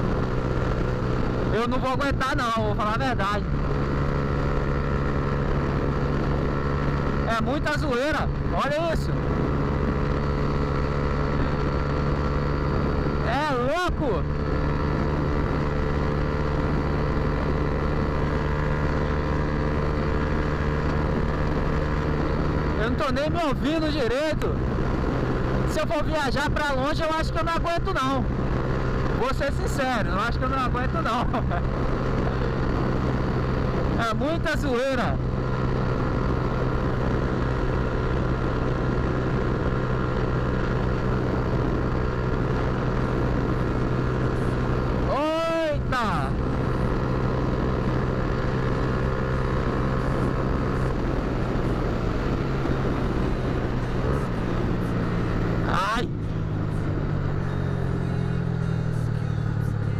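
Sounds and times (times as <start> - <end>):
motorcycle engine running: 0.0 - 59.9.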